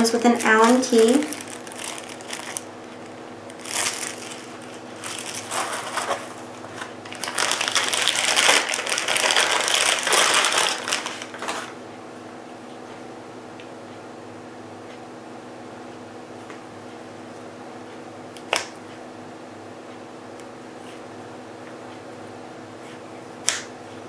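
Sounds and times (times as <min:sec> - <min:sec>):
packaging rustling and crinkling: 0:00.0 - 0:11.8.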